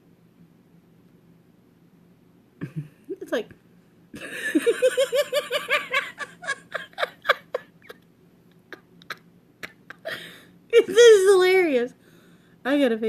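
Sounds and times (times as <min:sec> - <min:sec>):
woman laughing: 0:04.2 - 0:08.0, 0:08.6 - 0:11.2.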